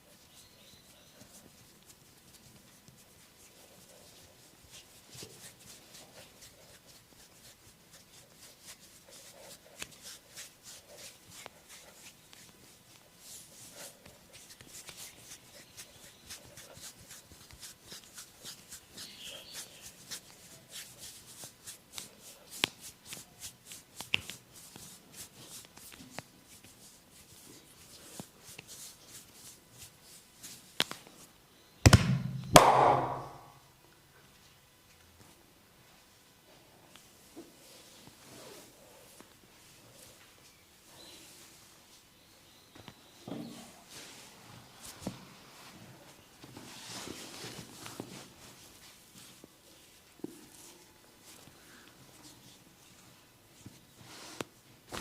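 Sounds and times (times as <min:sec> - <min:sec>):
hands tapping and rubbing skin: 0:01.2 - 0:31.1.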